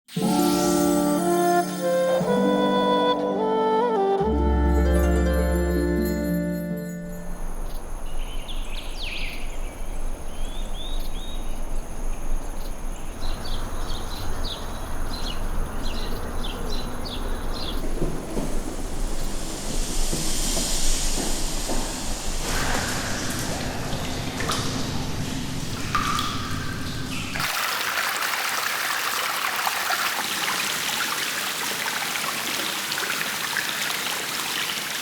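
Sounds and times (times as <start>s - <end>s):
long held music notes: 0.2s - 7.5s
high insect drone: 7.0s - 25.4s
birds chirping: 7.3s - 19.2s, 23.5s - 27.4s.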